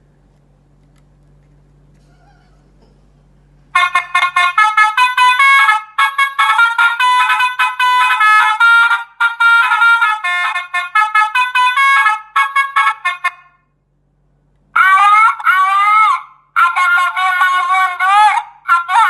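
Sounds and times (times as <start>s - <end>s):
reversing horn beeping melody: 3.8s - 13.6s.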